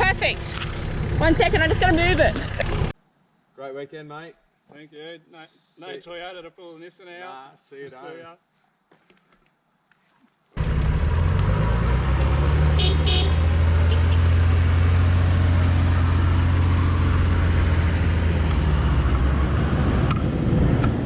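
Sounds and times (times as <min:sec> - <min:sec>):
vehicle engine droning: 0:00.0 - 0:02.9, 0:10.6 - 0:21.0.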